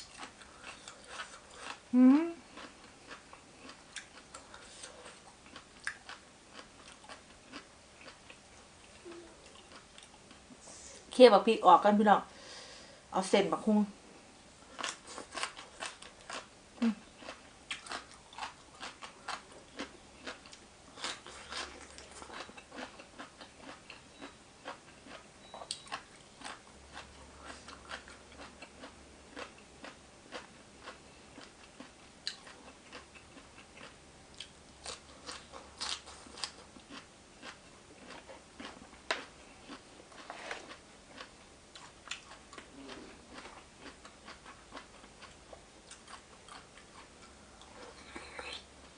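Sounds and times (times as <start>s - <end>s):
person chewing crunchy food: 0.0s - 10.5s, 14.6s - 48.9s.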